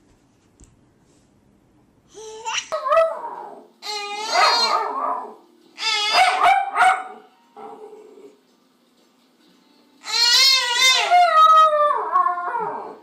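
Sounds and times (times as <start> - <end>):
dog whining howls: 2.8 - 6.4, 10.0 - 13.0.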